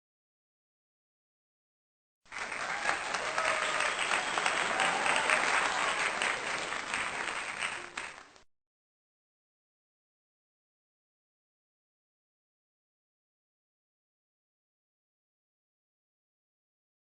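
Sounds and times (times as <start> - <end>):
crowd applause: 2.3 - 8.5.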